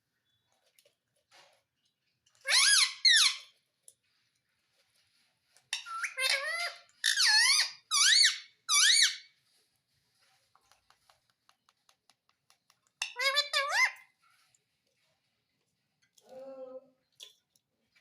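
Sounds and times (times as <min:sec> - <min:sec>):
parrot calling shrilly: 0:05.8 - 0:09.3, 0:13.0 - 0:14.0.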